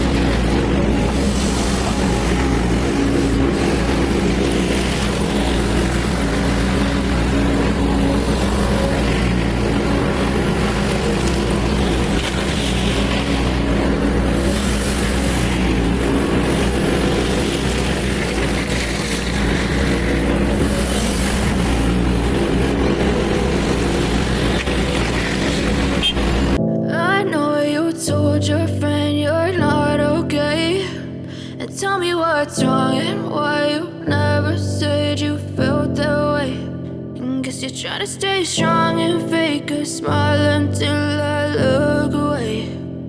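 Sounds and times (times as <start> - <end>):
large diesel engine running: 0.0 - 26.6.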